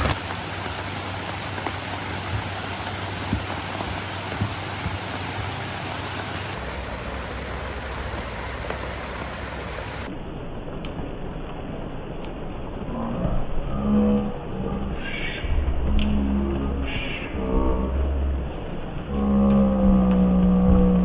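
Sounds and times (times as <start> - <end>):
rain drops ticking: 0.0 - 12.8, 17.8 - 21.0
steady rain falling: 0.0 - 21.0.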